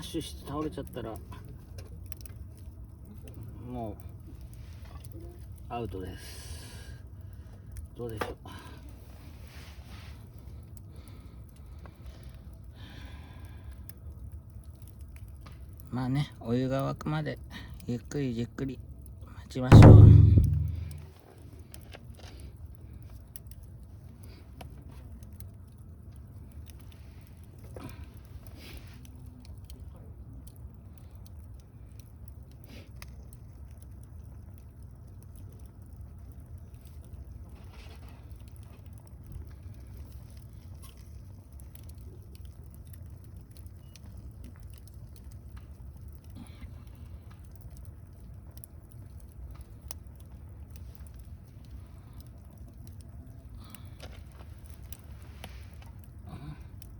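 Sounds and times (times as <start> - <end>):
campfire crackling: 0.0 - 56.9
low steady rumble: 19.7 - 21.1.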